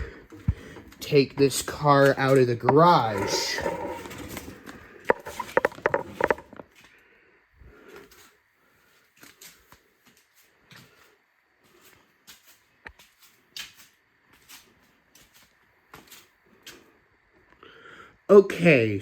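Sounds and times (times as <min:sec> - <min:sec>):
handling clicks and knocks: 0:00.2 - 0:04.5, 0:05.1 - 0:06.7.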